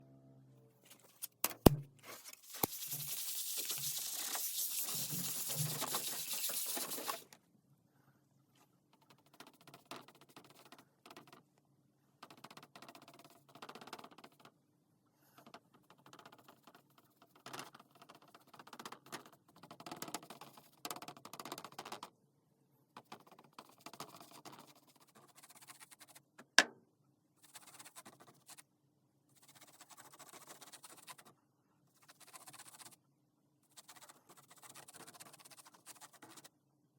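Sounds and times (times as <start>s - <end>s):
light scratching and rubbing: 2.0s - 7.2s.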